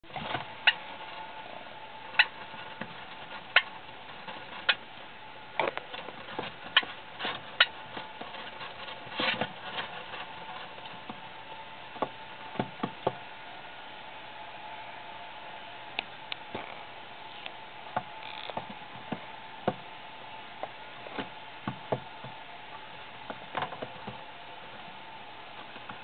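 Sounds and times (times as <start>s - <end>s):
faint steady hum: 0.0s - 26.0s
hamster squeaking: 0.1s - 4.9s, 5.6s - 10.1s.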